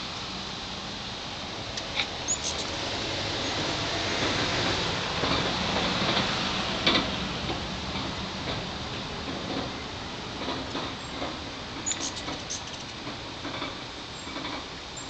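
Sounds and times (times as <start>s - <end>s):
hummingbird wings buzzing: 1.7s - 3.9s.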